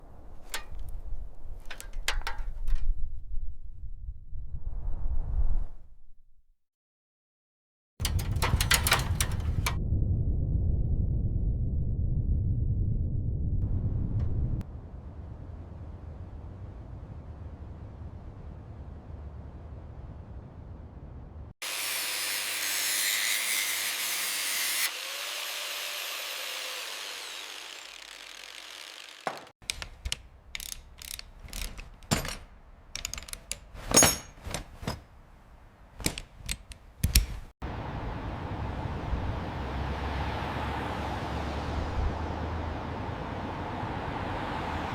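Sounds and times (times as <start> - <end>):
hand tools clicking on metal: 1.6 - 2.7, 8.0 - 9.8, 29.2 - 34.3
steady low rumble: 8.0 - 21.5.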